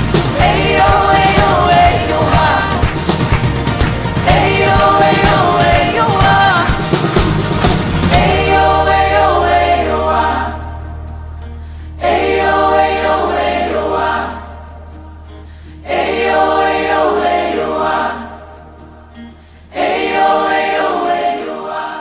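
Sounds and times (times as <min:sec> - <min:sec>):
choir singing worship song: 0:00.0 - 0:22.0
low drone: 0:07.5 - 0:15.9.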